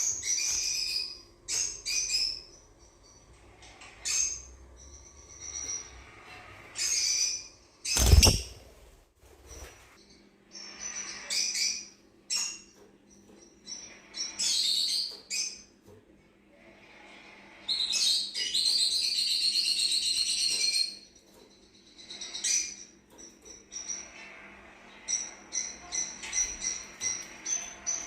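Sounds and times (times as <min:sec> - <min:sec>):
lovebirds chirping: 0:06.8 - 0:08.7
loud thump: 0:08.0 - 0:08.8.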